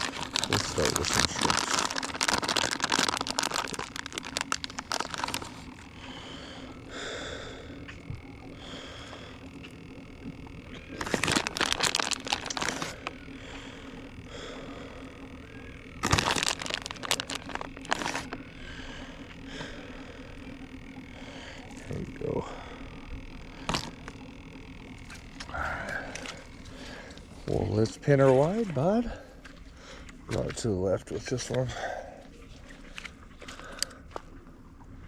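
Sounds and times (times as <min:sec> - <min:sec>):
bait crinkling and scraping: 0:00.0 - 0:06.8, 0:07.8 - 0:34.7.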